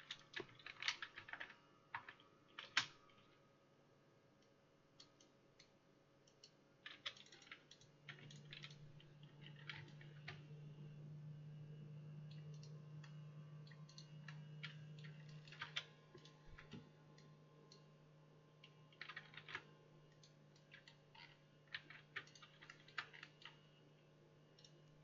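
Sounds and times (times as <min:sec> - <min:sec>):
typing on computer keyboard: 0:00.0 - 0:03.3, 0:06.3 - 0:10.4, 0:13.7 - 0:16.8, 0:18.9 - 0:23.6
steady low hum: 0:07.5 - 0:25.0.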